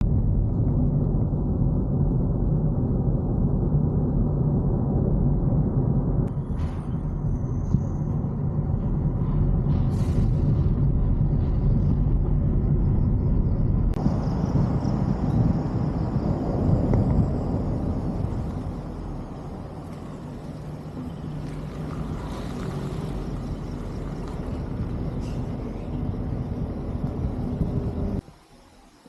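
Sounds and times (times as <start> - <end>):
loud low rumble: 0.0 - 28.2
high-pitched hiss: 28.2 - 29.0.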